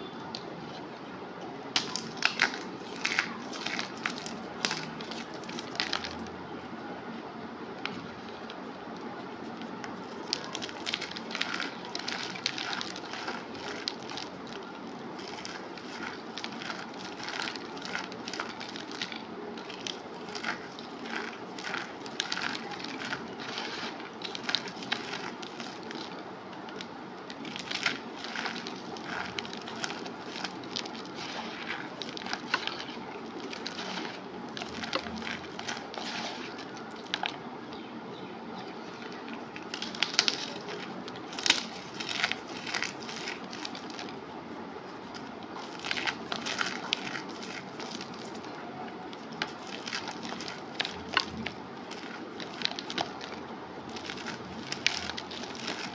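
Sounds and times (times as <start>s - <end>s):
cornstarch crunching by hand: 1.7s - 6.3s, 7.8s - 37.4s, 38.8s - 44.2s, 44.9s - 55.9s.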